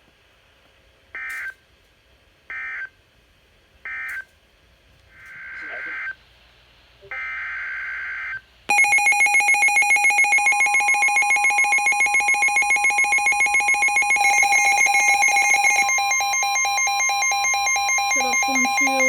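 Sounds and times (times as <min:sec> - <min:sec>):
rapidly pulsing electronic alarm: 0:05.2 - 0:06.2, 0:07.1 - 0:19.0
buzzy data tone: 0:08.7 - 0:19.0
steady alert tone: 0:08.7 - 0:19.0.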